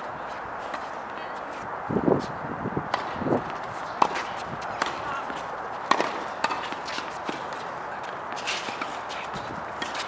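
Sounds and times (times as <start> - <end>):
outdoor court noise: 0.0 - 10.0
racket hitting tennis ball: 2.8 - 10.0
tennis ball bouncing: 2.8 - 10.0.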